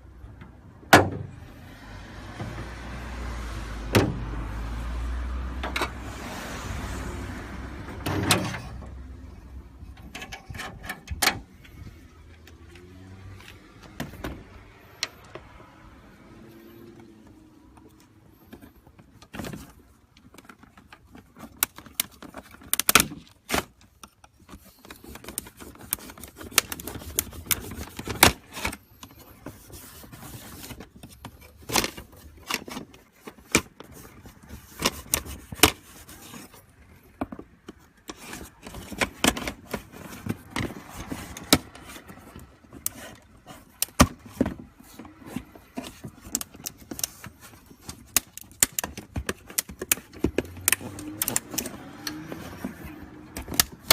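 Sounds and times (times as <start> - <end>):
tools scraping plastic: 8.0 - 15.5, 17.8 - 53.9
tools clicking on plastic: 37.2 - 53.9.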